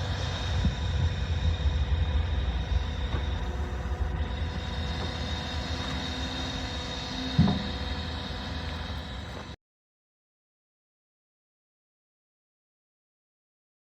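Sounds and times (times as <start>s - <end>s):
diesel engine running: 0.0s - 9.6s
thin steady whine: 0.0s - 9.6s.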